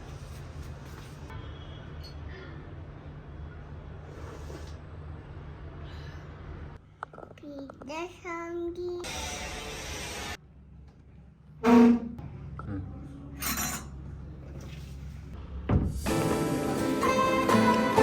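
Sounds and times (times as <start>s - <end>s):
guitar background music: 16.1s - 18.0s.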